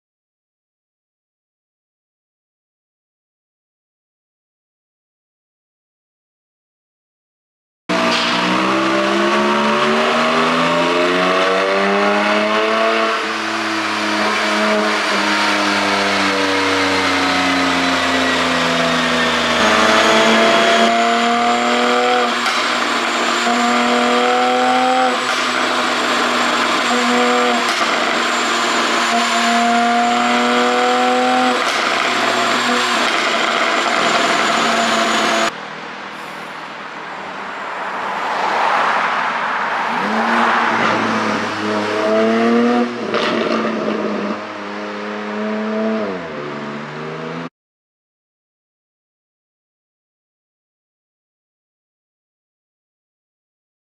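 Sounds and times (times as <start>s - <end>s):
car engine revving: 7.9s - 47.5s.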